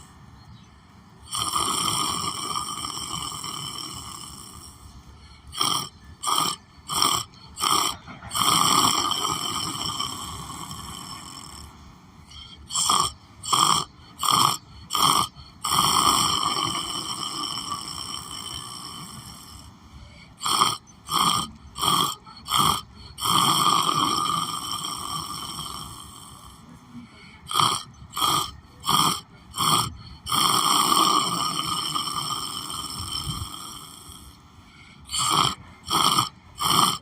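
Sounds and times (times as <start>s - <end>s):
person snoring and snorting: 1.2s - 37.0s.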